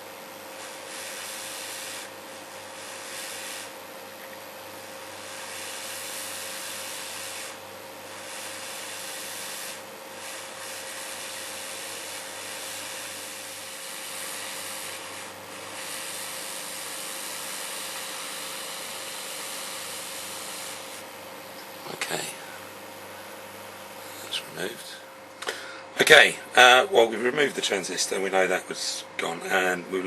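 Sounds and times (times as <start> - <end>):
hot air station blowing: 0.0 - 3.8, 4.5 - 21.1.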